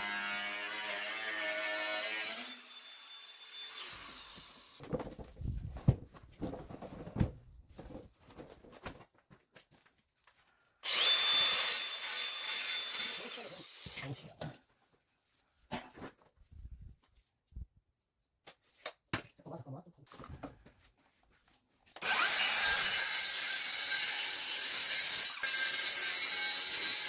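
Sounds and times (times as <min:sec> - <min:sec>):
electric power tool running: 0:10.8 - 0:14.0.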